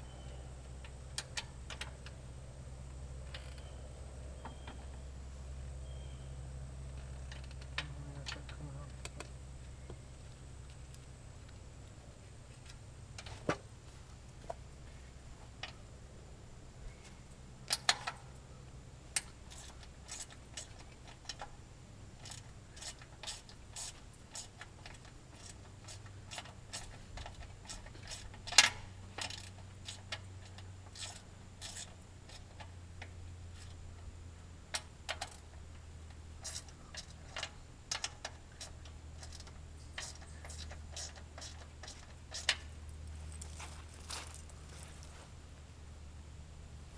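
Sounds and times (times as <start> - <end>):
low steady hum: 0.0 - 46.9
hand tools clicking on metal: 22.2 - 33.7, 34.7 - 42.7.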